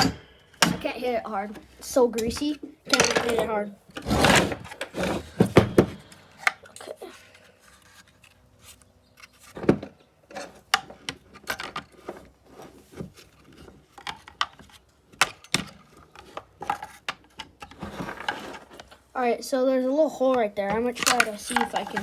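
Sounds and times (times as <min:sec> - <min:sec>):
hand tools clicking and scraping: 0:00.0 - 0:09.6, 0:20.2 - 0:22.0.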